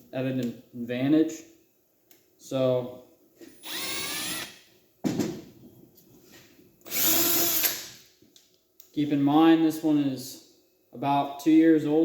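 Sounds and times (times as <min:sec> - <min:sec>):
cordless drill motor whine: 0:03.5 - 0:04.6.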